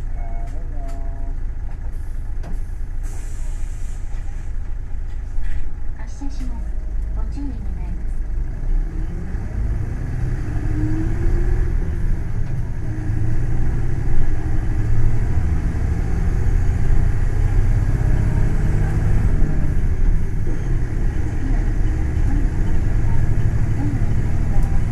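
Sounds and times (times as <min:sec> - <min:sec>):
bus engine rumble and whine: 0:00.0 - 0:24.9.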